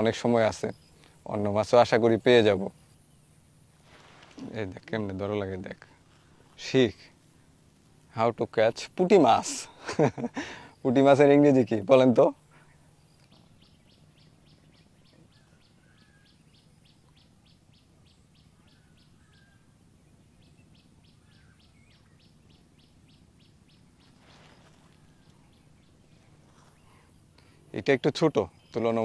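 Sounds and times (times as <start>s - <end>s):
bird chirping: 11.7s - 29.0s.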